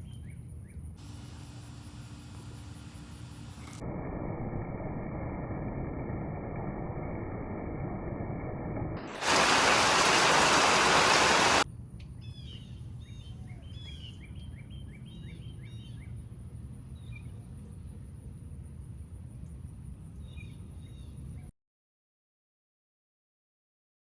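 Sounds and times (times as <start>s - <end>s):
heavy rain hiss: 1.0s - 7.8s, 9.0s - 11.6s.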